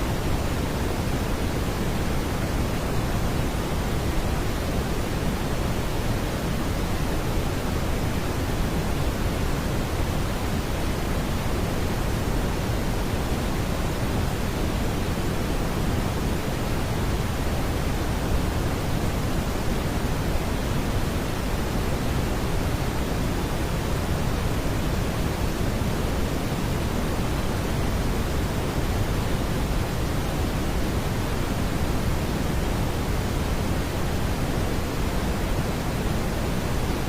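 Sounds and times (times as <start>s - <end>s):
brown noise hiss: 0.0s - 37.0s.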